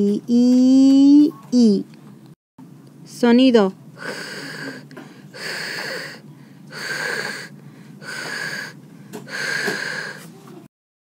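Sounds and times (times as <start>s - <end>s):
person making raspy throat hiss: 4.0s - 4.8s, 5.4s - 10.2s.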